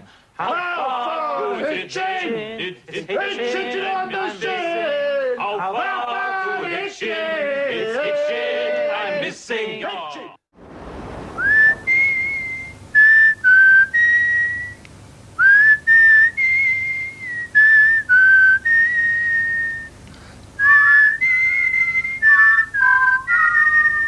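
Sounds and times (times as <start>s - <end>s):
person whistling slow tune: 11.4s - 14.8s, 15.4s - 19.9s, 20.6s - 24.0s.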